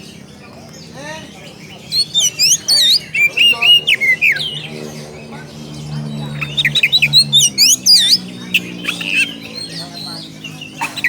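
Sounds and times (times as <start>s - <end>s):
bird singing whistled phrases: 1.7s - 5.0s, 6.2s - 11.0s.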